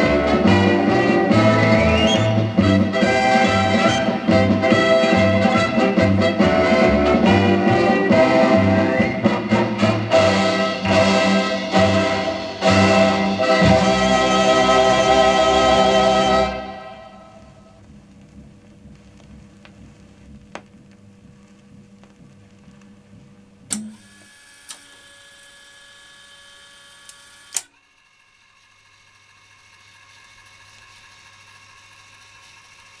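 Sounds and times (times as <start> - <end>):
record player motor hum: 17.4 - 33.0.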